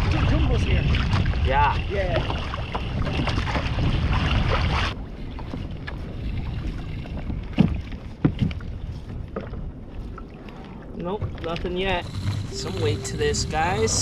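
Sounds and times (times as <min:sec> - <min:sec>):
wind buffeting microphone: 0:00.0 - 0:14.0
water wash: 0:10.4 - 0:14.0.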